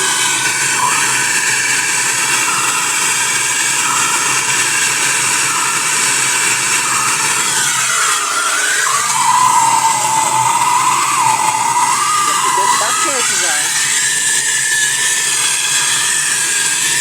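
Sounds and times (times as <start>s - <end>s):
blowtorch flame hissing: 8.4s - 17.0s.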